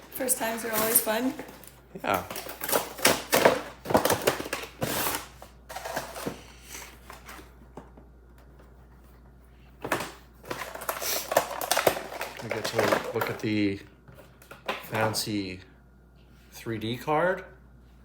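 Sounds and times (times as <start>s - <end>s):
card box packaging rustling: 0.0s - 7.6s, 9.8s - 13.5s.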